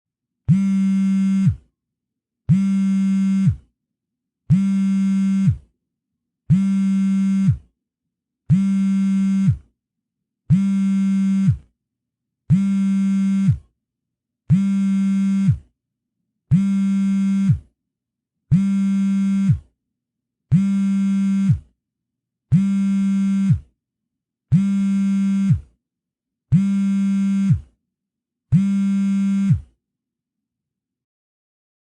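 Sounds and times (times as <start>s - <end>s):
cell phone vibrating: 0.5s - 1.7s, 2.5s - 3.7s, 4.5s - 5.7s, 6.5s - 7.7s, 8.5s - 9.7s, 10.5s - 11.7s, 12.5s - 13.7s, 14.5s - 15.7s, 16.5s - 17.7s, 18.5s - 19.8s, 20.5s - 21.8s, 22.5s - 23.8s, 24.5s - 25.8s, 26.5s - 27.8s, 28.5s - 29.8s.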